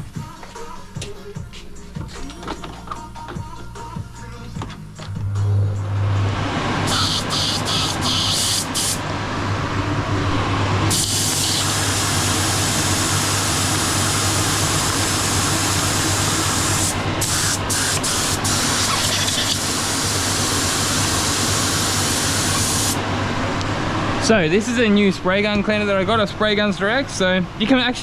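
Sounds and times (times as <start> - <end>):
steady low hum: 0.0 - 17.6
spray gun hissing: 6.9 - 9.0, 10.9 - 23.0.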